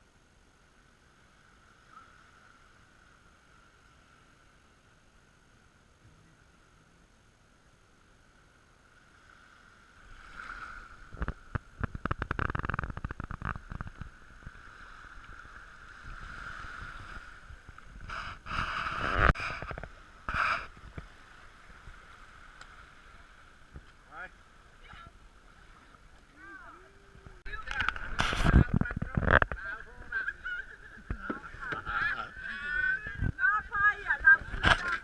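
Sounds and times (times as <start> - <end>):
water splashing and gurgling: 8.8 - 35.0.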